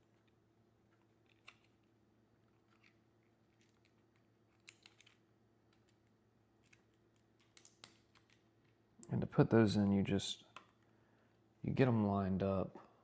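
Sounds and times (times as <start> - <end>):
small parts clicking: 2.6 - 8.8.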